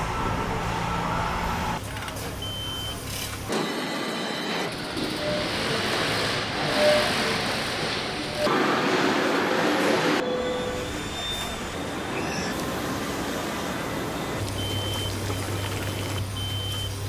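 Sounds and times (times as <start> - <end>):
assembly machinery hum and clatter: 0.0 - 17.0
short electronic beeps: 2.4 - 5.6, 10.2 - 12.5, 13.9 - 17.0.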